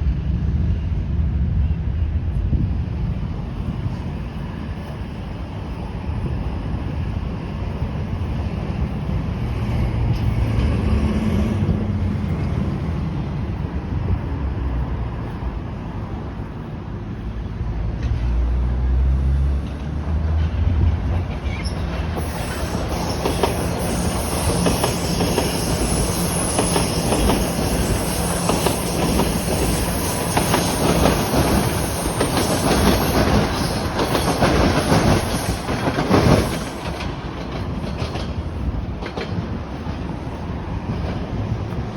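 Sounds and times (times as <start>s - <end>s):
train wheels clacking over rail joints: 19.5s - 41.9s
train wheel squeal: 21.1s - 38.3s.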